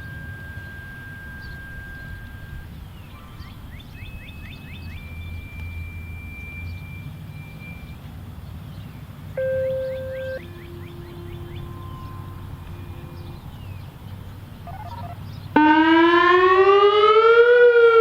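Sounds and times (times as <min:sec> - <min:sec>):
steady beep: 0:00.0 - 0:02.8, 0:04.2 - 0:08.0, 0:09.4 - 0:14.1
radio activation tones: 0:09.4 - 0:13.6
quick rising chirps: 0:09.4 - 0:15.2.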